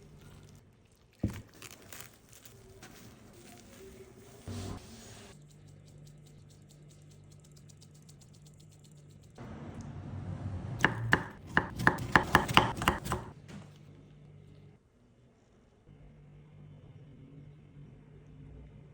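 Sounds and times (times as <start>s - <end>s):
rustling: 0.0s - 4.8s
knife chopping on cutting board: 10.8s - 13.4s.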